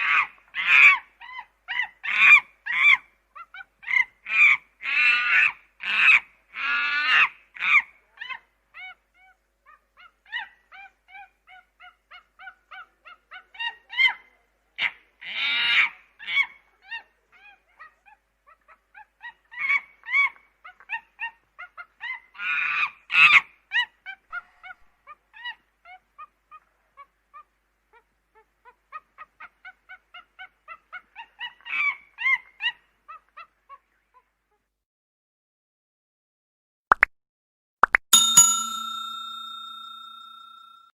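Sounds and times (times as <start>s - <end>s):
chimpanzees screaming: 0.0s - 9.4s, 10.4s - 21.0s, 28.9s - 33.5s.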